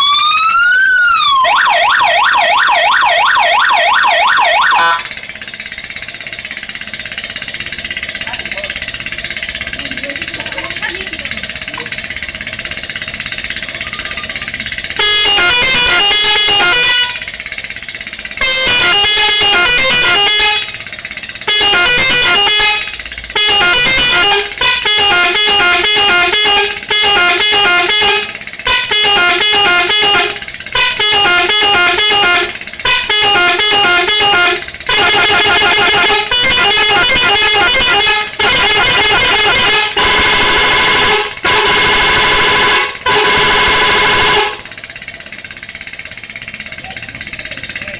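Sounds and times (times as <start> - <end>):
multi-tone bus horn melody: 1.6 - 5.1, 13.8 - 17.5, 18.3 - 45.1.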